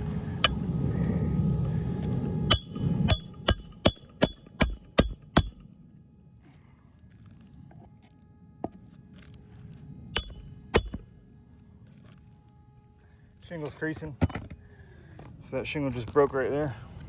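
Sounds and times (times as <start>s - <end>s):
hammer striking metal: 0.4s - 0.8s, 2.5s - 5.7s, 10.2s - 11.2s.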